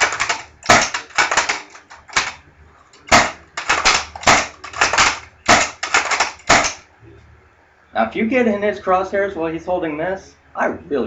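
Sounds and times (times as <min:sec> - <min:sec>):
rapid sharp clicking: 0:00.0 - 0:02.4, 0:03.0 - 0:06.8.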